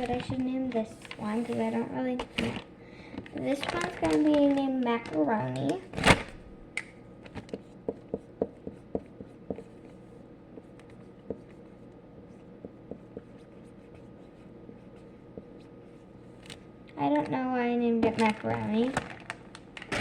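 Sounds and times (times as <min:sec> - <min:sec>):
pen writing taps and scratches: 0:07.3 - 0:10.0, 0:10.6 - 0:15.7.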